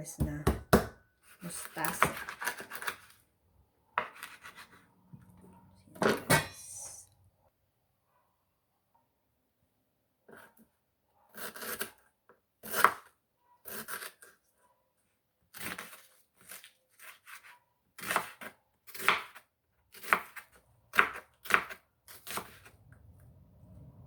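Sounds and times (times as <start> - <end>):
knife cutting on cutting board: 1.8 - 3.1, 4.0 - 4.8, 15.6 - 22.8.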